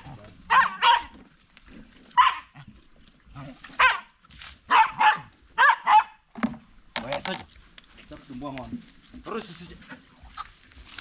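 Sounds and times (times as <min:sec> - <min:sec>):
dog barking: 0:00.5 - 0:01.2, 0:02.2 - 0:02.6, 0:03.8 - 0:04.1, 0:04.7 - 0:06.2.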